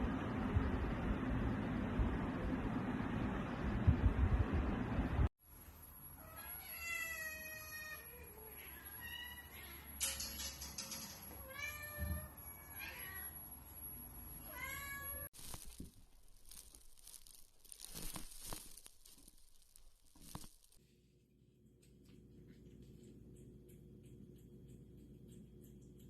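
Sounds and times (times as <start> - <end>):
cat meowing: 6.2 - 9.9, 11.4 - 13.4, 14.4 - 15.3.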